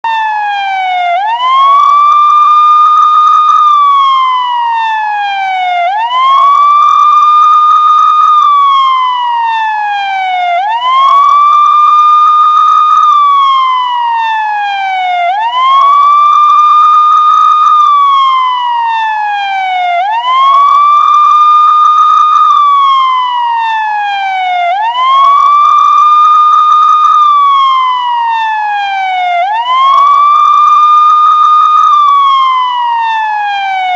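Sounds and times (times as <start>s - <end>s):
police siren wailing: 0.0s - 33.9s.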